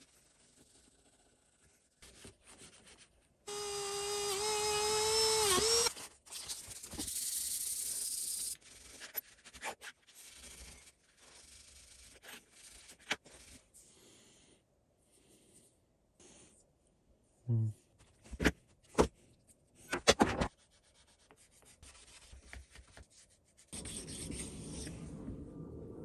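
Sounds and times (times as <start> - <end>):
power tool whining: 3.5 - 5.9.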